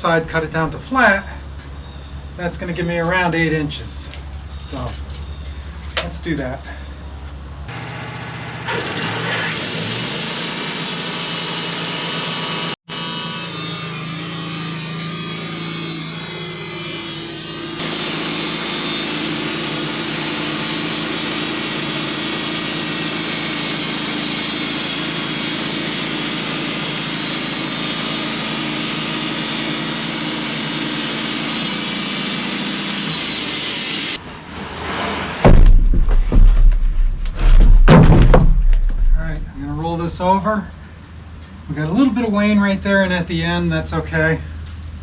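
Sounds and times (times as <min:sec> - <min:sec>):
sawmill engine and blade cutting: 0:07.7 - 0:35.6
heavy thumps and knocks: 0:35.4 - 0:39.8.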